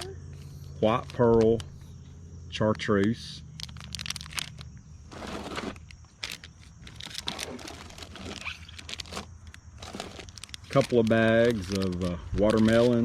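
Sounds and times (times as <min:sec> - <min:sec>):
plastic bags crinkling: 0:03.5 - 0:13.0.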